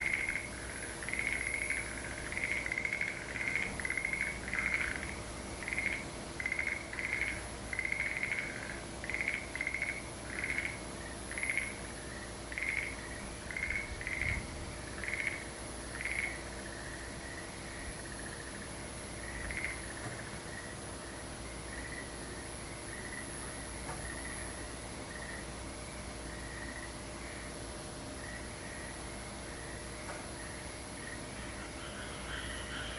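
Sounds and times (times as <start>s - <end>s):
faint high hiss: 0.0s - 32.9s
frogs croaking: 0.0s - 32.9s.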